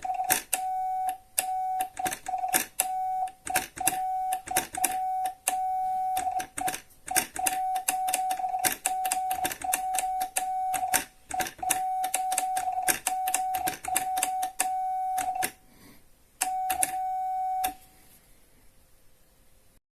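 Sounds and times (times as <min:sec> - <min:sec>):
morse code beeps: 0:00.0 - 0:15.6, 0:16.4 - 0:17.8
telegraph key clicks: 0:06.2 - 0:15.6.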